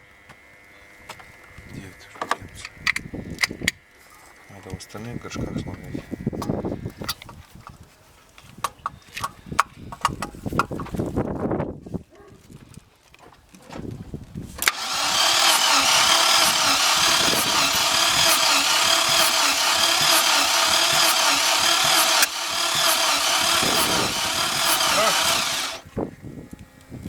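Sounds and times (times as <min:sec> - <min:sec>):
engine cranking without firing: 0:14.6 - 0:25.8.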